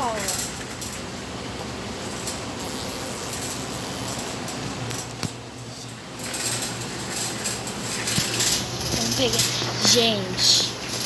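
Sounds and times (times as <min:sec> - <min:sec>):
shopping cart rattling: 0:00.0 - 0:02.5, 0:05.9 - 0:11.0
store background hum: 0:00.0 - 0:11.0.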